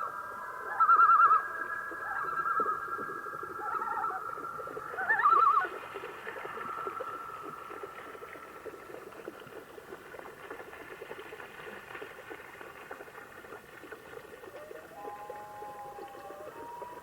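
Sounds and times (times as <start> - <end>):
loon wailing call: 0.6 - 2.8, 5.0 - 5.7, 14.6 - 17.0.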